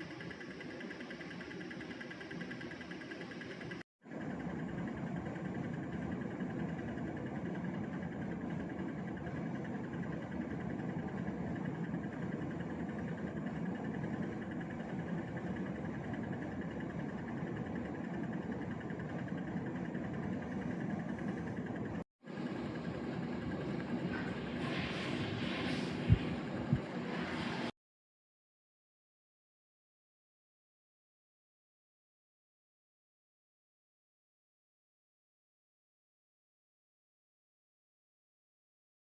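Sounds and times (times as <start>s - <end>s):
air conditioner humming and whirring: 0.0s - 27.8s.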